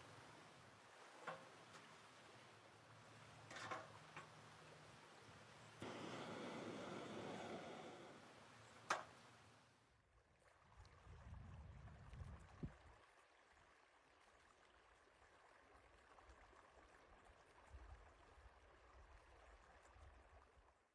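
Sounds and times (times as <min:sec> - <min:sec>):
running water rushing: 0:00.0 - 0:09.6.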